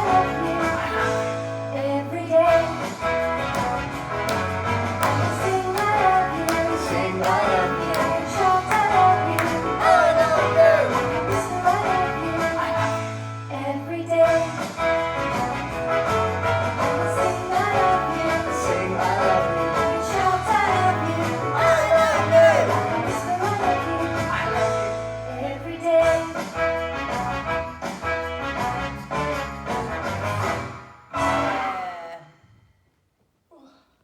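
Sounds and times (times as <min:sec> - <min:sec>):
song with singing and beat: 0:00.0 - 0:14.9, 0:16.8 - 0:26.6.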